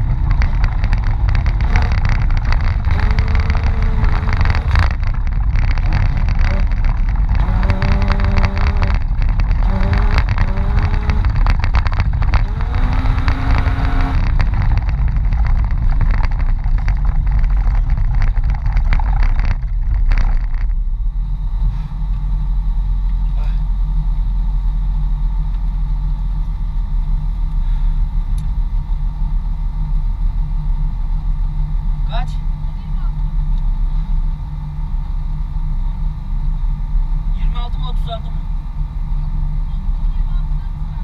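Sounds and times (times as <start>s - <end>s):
knocks and rattles: 0.0s - 20.9s
car engine running heavily: 0.0s - 41.0s.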